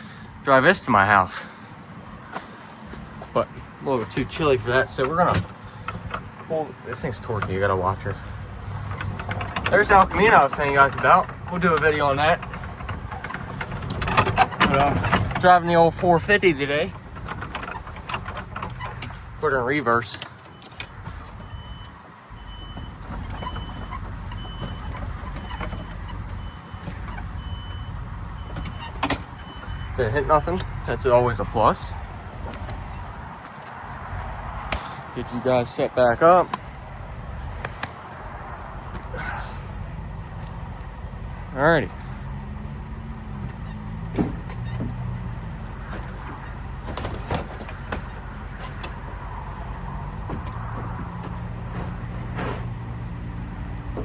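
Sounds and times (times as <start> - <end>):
knocks and clunks: 0.0 - 54.0
vehicle engine running: 0.0 - 54.0
reversing alarm beeping: 20.5 - 31.6.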